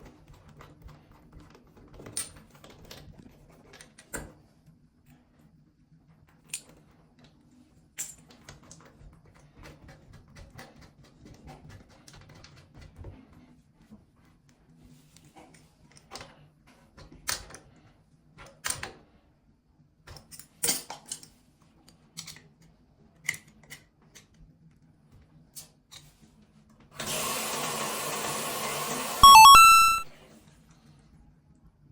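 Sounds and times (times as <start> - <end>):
short electronic beep: 29.2 - 30.1.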